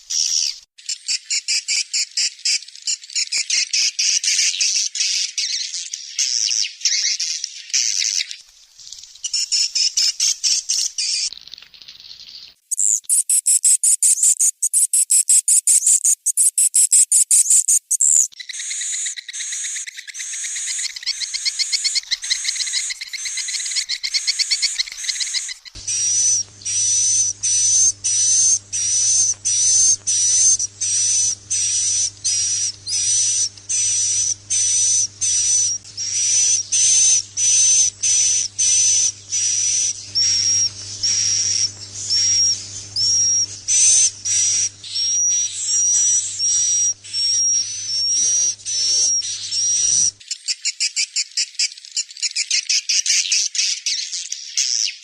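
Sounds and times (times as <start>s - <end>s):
swiftlet calls: 8.8s - 50.2s
low steady hum: 25.6s - 50.2s.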